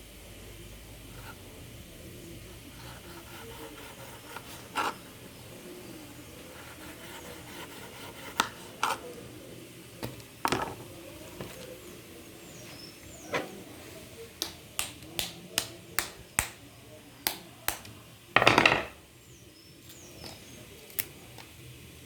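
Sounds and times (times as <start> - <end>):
knife scraping fruit pulp: 2.5 - 9.3.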